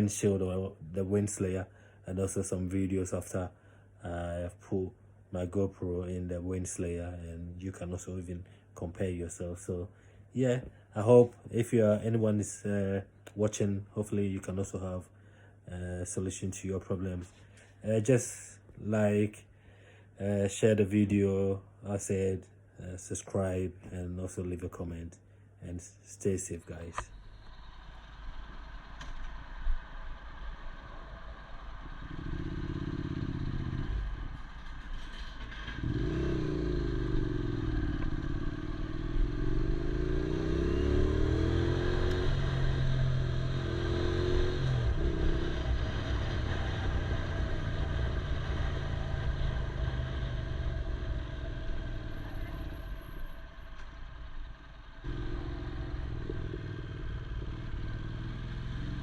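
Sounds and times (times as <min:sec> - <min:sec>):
motorcycle engine revving: 0:30.4 - 0:53.6, 0:55.0 - 0:59.0.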